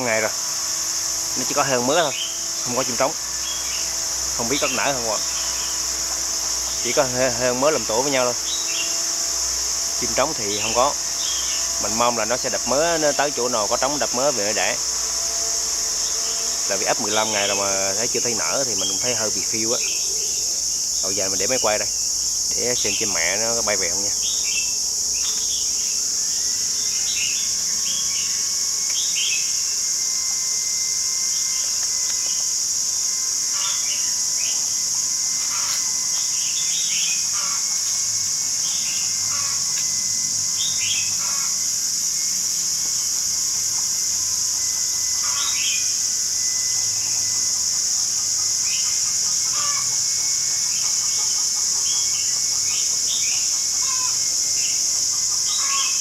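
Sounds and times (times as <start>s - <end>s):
high insect drone: 0.0s - 56.0s
bird chirps and calls: 1.4s - 5.9s, 10.0s - 15.0s, 33.5s - 34.6s, 35.4s - 38.0s, 40.6s - 41.6s, 45.2s - 45.9s, 50.7s - 54.8s, 55.4s - 56.0s.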